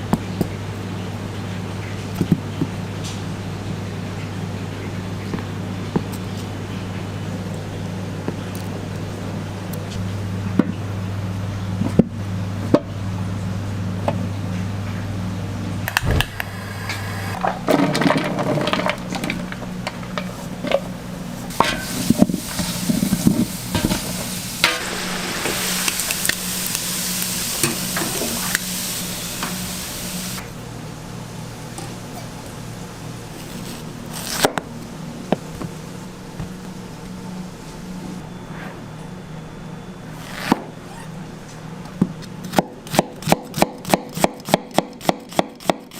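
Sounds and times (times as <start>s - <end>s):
steady low hum: 0.0s - 44.8s
metal utensils clinking and scraping: 21.5s - 24.8s
food sizzling in a pan: 21.5s - 30.5s.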